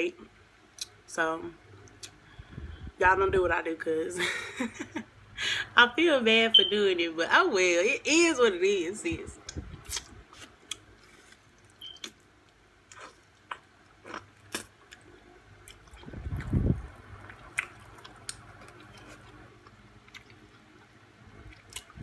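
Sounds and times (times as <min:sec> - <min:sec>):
wet chewing mouth sounds: 0:12.9 - 0:22.0.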